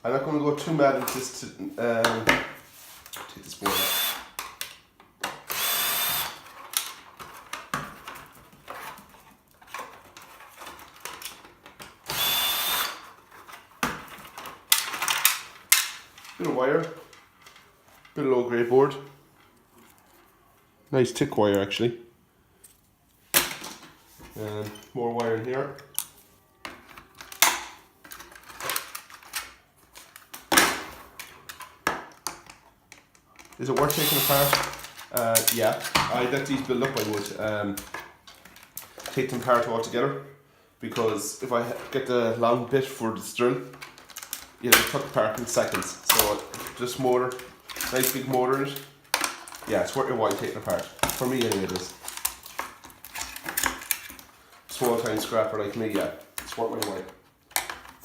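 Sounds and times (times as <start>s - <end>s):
plastic parts clattering: 0.6s - 18.2s, 22.6s - 40.0s, 40.8s - 58.0s
cordless drill whirring: 3.6s - 4.4s, 5.5s - 6.5s, 12.1s - 13.0s, 33.9s - 34.8s
screws and metal parts clicking: 32.9s - 35.5s.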